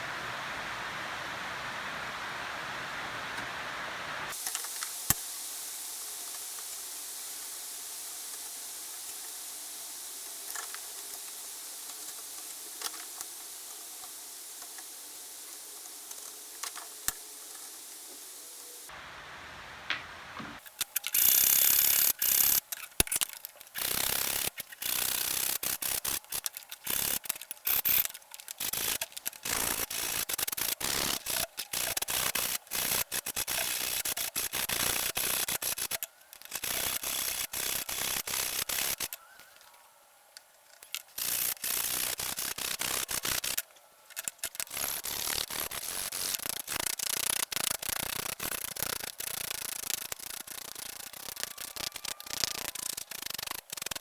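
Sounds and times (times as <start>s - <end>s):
scraping on steel wrench: 20.6s - 39.2s, 40.8s - 43.6s.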